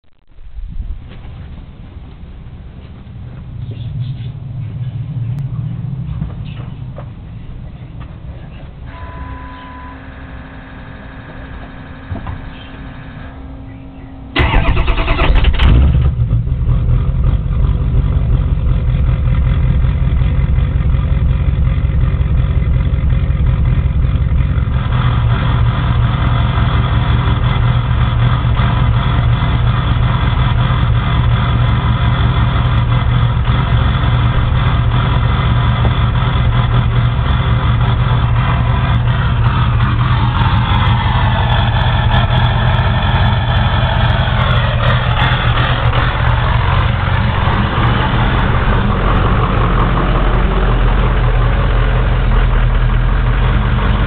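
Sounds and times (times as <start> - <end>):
diesel engine cranking and idling: 1.0 - 54.0
short beep: 8.9 - 11.3.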